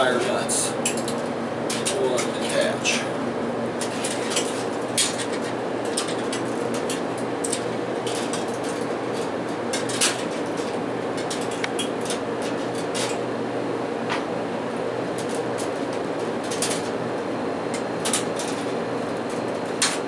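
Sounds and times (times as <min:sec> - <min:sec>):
air-handling hum: 0:00.0 - 0:15.9.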